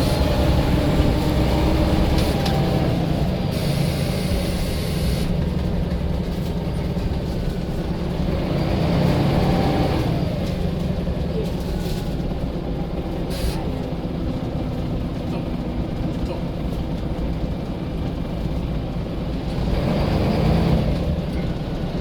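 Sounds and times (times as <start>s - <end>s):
diesel bus engine droning: 0.0s - 22.0s.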